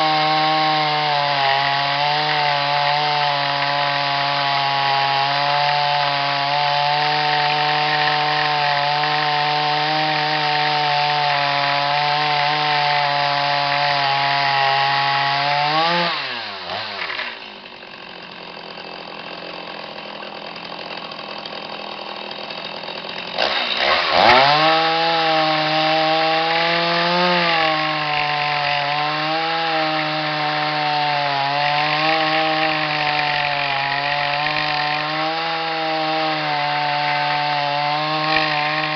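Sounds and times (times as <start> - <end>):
chainsaw cutting a log: 0.0 - 38.9.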